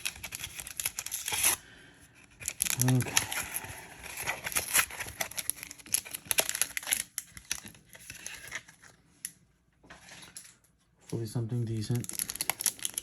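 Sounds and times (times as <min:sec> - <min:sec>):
foil wrappers crinkling and tearing: 0:00.0 - 0:08.9, 0:11.7 - 0:13.0.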